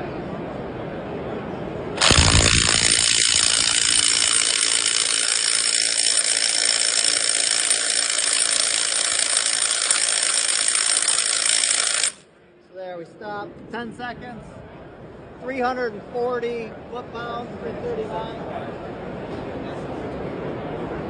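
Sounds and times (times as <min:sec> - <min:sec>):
impact wrench hammering: 0:02.0 - 0:12.2.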